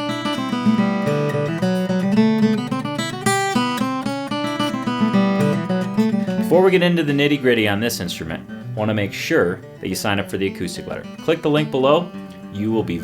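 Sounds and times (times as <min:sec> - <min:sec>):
acoustic guitar playing: 0:00.0 - 0:13.0.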